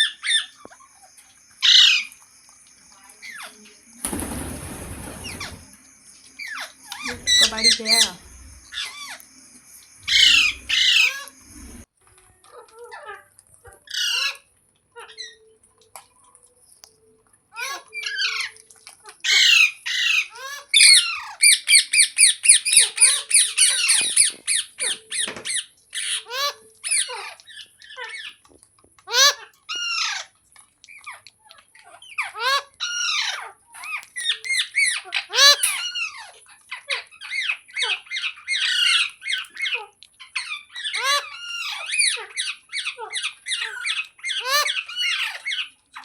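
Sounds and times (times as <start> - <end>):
parrot squawking: 1.6 - 2.1, 6.4 - 9.2, 10.1 - 11.9, 12.5 - 15.6, 17.5 - 28.4, 29.0 - 46.0.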